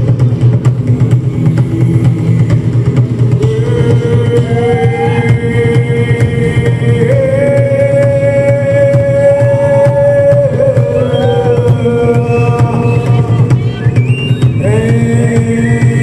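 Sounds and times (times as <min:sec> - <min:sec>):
dense low drone: 0:00.0 - 0:09.4
steady percussive beat: 0:00.0 - 0:16.0.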